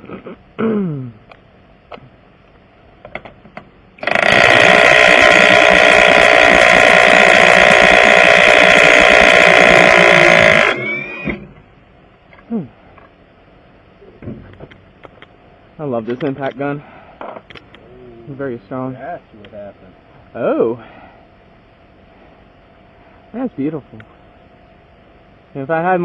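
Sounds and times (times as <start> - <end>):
impact wrench running: 4.0 - 11.5.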